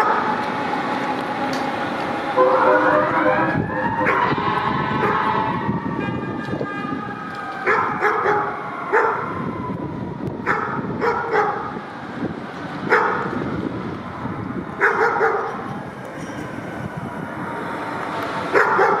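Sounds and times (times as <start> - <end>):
street background noise: 0.0 - 19.0
dog barking: 7.7 - 9.2, 10.4 - 11.7, 12.9 - 13.3, 14.8 - 15.6, 18.5 - 19.0.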